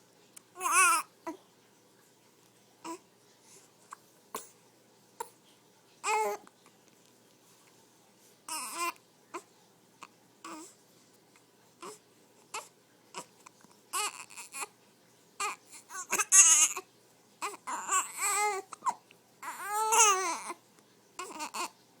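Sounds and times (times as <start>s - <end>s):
baby crying and babbling: 0.6s - 1.4s, 6.0s - 6.4s, 8.5s - 9.4s, 10.4s - 10.8s, 13.9s - 14.7s, 15.4s - 16.8s, 17.4s - 20.6s, 21.2s - 21.7s.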